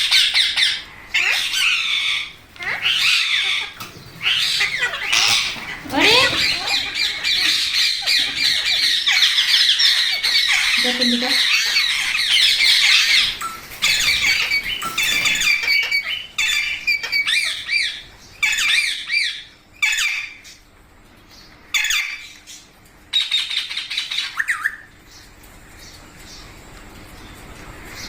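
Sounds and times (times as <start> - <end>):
parakeets squawking: 0.0 - 20.6, 21.7 - 22.4.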